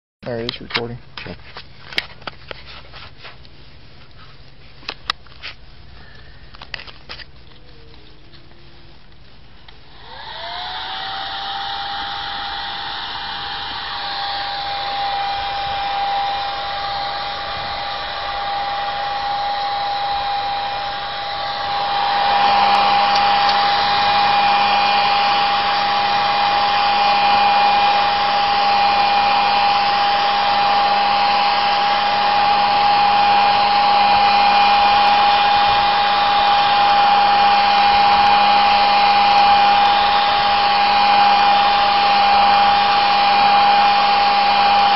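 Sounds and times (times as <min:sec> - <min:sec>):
hair dryer running: 0:09.6 - 0:44.9.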